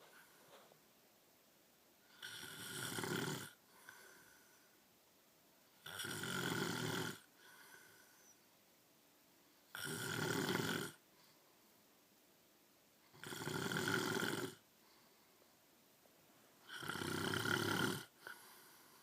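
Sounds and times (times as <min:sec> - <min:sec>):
man snoring: 0:02.1 - 0:04.2, 0:05.8 - 0:07.9, 0:09.7 - 0:11.0, 0:13.1 - 0:14.6, 0:16.7 - 0:18.4.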